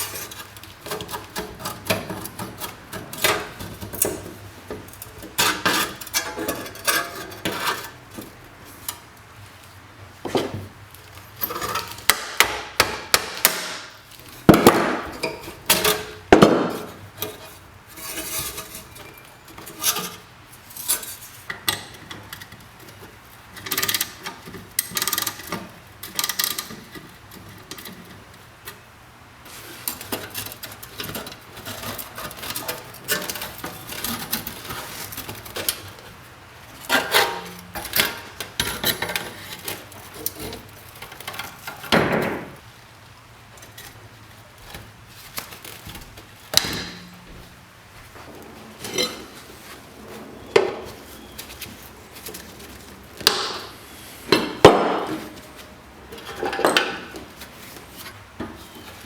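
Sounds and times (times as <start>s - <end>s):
scraping and rubbing: 43.7s - 59.0s.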